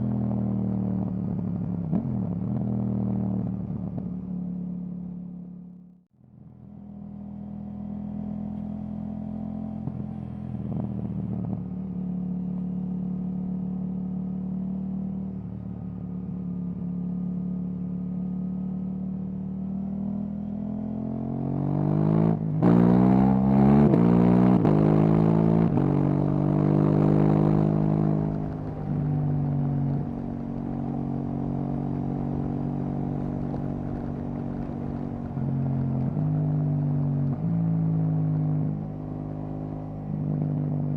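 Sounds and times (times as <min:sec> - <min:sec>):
motorcycle engine accelerating: 0:18.5 - 0:40.9.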